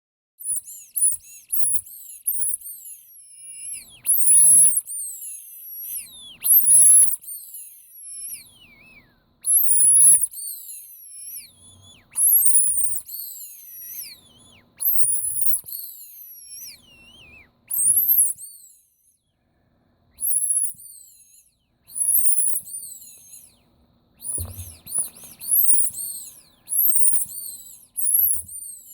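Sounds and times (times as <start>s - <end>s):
rubber squeaky toy squeaking: 14.8s - 17.0s, 24.2s - 28.8s.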